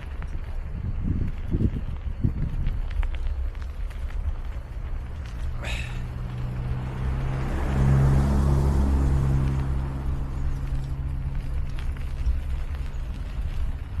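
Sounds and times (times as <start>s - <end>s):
car driving past: 5.0s - 12.0s.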